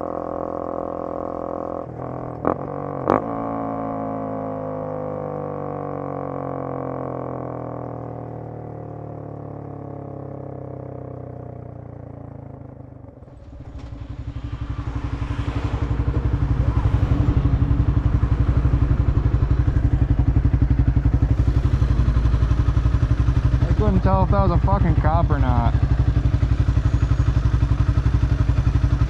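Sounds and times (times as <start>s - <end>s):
motorcycle engine running: 0.0s - 29.0s
droning music tone: 12.8s - 29.0s.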